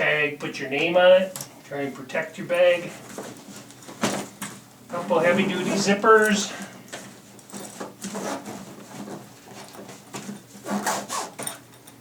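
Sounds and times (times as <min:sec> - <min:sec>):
tool bag zippers scraping: 0:04.9 - 0:06.4, 0:07.5 - 0:11.6.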